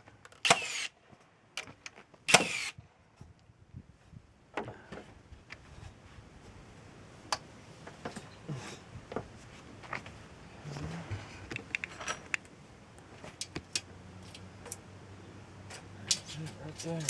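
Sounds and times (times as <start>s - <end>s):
tools and hardware clinking: 11.7s - 12.4s, 15.7s - 17.0s.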